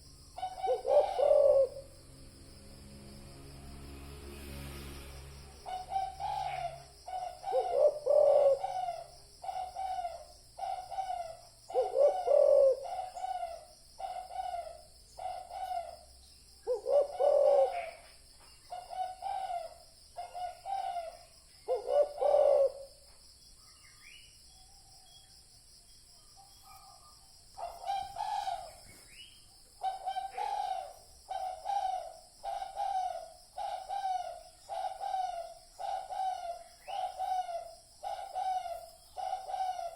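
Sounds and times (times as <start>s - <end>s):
dove cooing: 0.0s - 2.0s, 5.6s - 16.0s, 16.7s - 18.0s, 18.7s - 23.0s, 26.4s - 29.0s, 29.8s - 39.9s.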